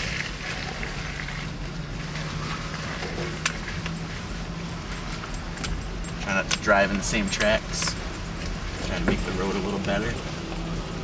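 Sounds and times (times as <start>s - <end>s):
loose items clinking and rattling: 0.0s - 10.4s
low engine hum: 0.0s - 11.0s.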